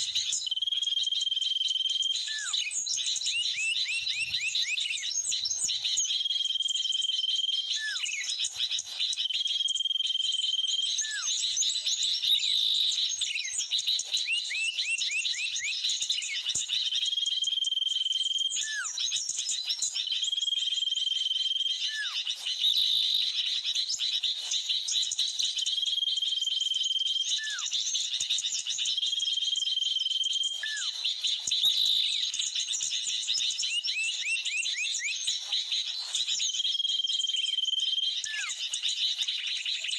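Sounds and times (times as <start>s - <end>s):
small birds chirping: 0.0s - 39.9s
bulbul calls: 38.2s - 39.9s.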